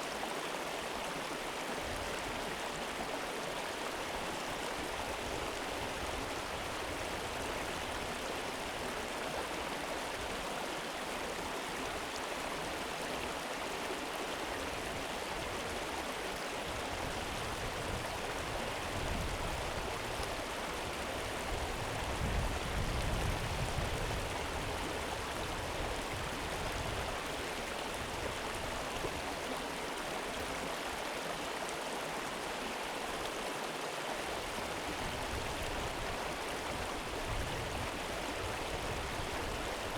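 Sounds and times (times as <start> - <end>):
river flowing: 0.0 - 39.9.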